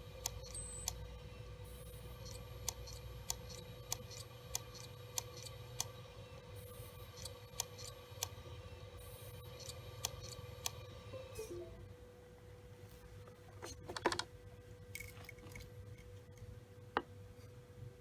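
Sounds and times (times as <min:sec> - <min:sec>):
hard drive clicking: 0:00.0 - 0:06.0, 0:06.9 - 0:08.5, 0:09.1 - 0:10.9
faint steady whine: 0:00.0 - 0:13.6.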